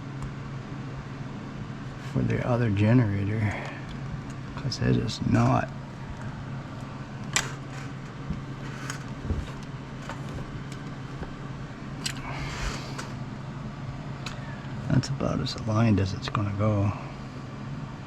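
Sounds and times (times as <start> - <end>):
steady low hum: 0.0 - 18.0
small parts clicking and scraping: 7.3 - 10.8.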